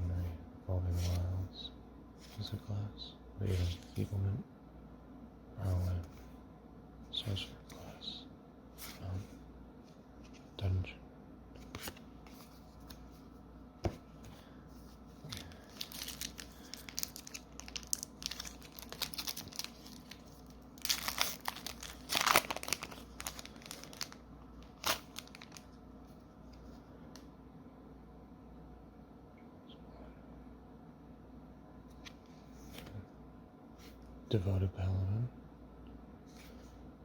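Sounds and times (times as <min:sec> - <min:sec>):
foil wrapper tearing and crinkling: 0:15.4 - 0:25.6.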